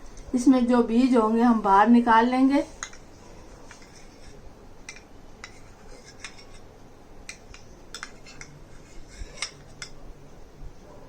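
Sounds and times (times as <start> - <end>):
spoon clicking against bowl: 4.9 - 5.6, 7.2 - 8.6.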